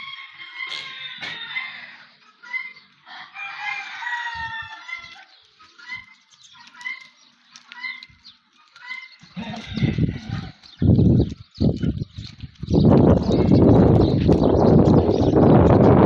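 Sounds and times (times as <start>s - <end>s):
rooster crowing: 0.0s - 6.0s, 8.9s - 10.6s
chickens calling: 0.0s - 16.0s.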